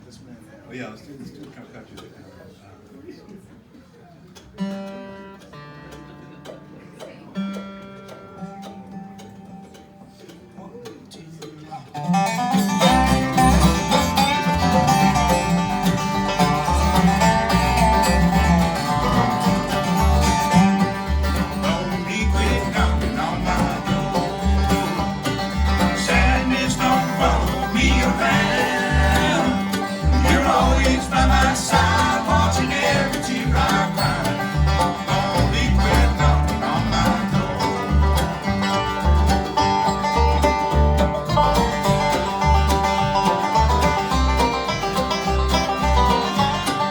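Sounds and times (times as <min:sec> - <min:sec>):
bluegrass band playing: 0:04.4 - 0:46.9
bass notes pulsing: 0:12.5 - 0:46.9.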